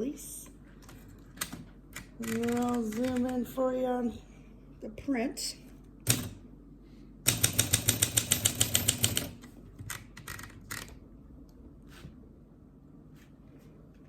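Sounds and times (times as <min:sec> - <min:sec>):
manual typewriter key strikes: 0:07.3 - 0:09.4.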